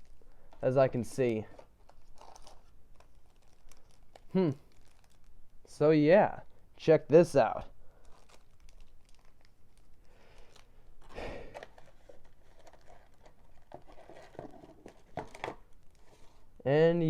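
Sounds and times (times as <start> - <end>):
foil packs rustling: 1.3 - 5.3.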